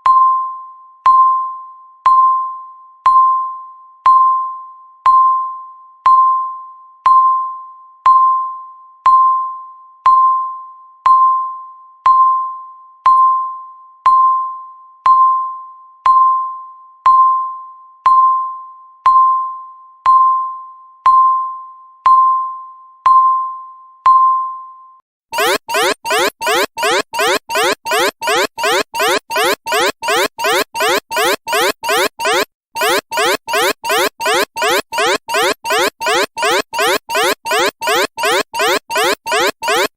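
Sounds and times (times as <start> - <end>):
countdown timer beeping: 25.4 - 39.9.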